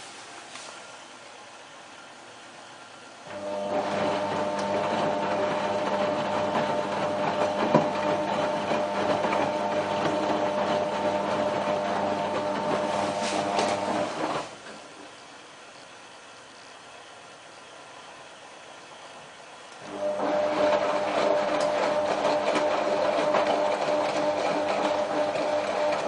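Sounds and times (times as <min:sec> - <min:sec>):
washing machine running: 0:03.2 - 0:14.8, 0:19.8 - 0:26.0.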